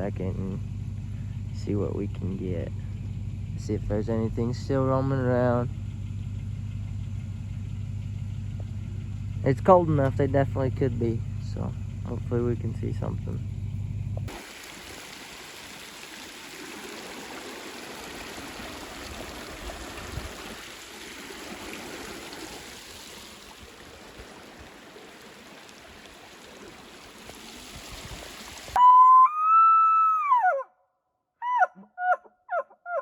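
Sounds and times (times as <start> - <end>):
whistled elk call: 28.8 - 30.7, 31.4 - 33.0.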